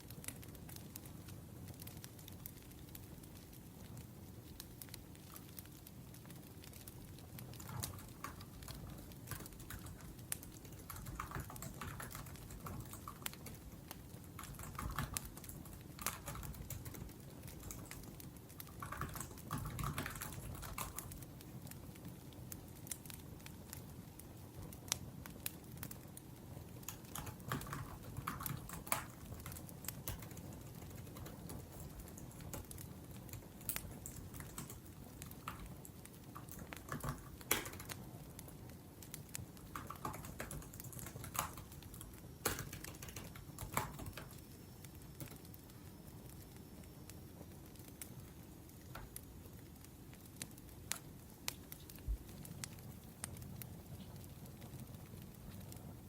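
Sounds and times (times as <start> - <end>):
firewood crackling: 0.0 - 56.0
laptop keyboard typing: 7.4 - 21.3, 26.8 - 38.0, 39.3 - 44.5.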